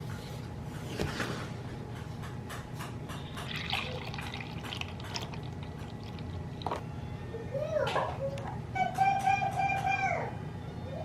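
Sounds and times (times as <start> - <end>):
liquid splashing and dripping: 3.3 - 6.8.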